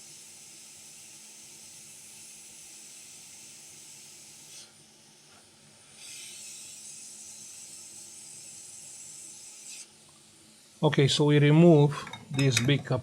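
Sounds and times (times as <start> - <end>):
hot air nozzle hissing: 0.0 - 10.0.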